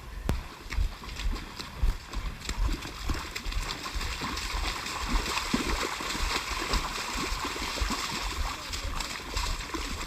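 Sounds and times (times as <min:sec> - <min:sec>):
low thuds: 0:00.2 - 0:05.7
footsteps splashing through mud: 0:00.3 - 0:10.0.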